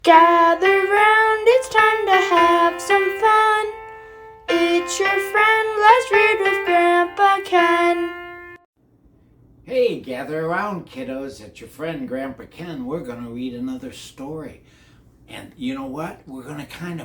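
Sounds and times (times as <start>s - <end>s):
person singing: 0.0s - 8.6s
keyboard accompaniment: 0.0s - 8.7s.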